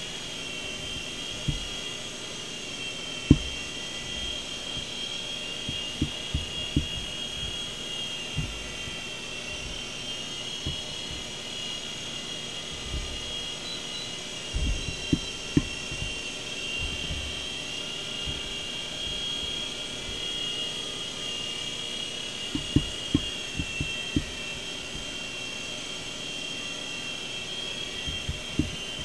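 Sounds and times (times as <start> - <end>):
rc helicopter whine: 0.0 - 29.0
low knocks: 1.4 - 1.8, 3.3 - 3.6, 5.7 - 7.7, 8.3 - 9.0, 10.6 - 11.3, 12.7 - 13.5, 14.5 - 16.2, 22.6 - 24.4, 28.1 - 28.8.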